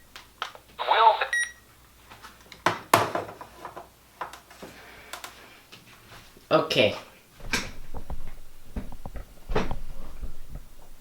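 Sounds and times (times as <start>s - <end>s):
alert voice through small speaker: 0.8s - 1.4s.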